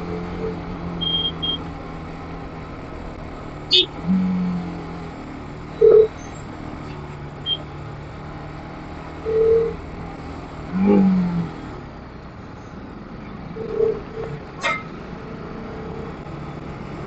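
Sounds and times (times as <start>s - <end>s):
motorcycle engine running: 0.0s - 11.6s
road and wind noise: 0.0s - 17.0s.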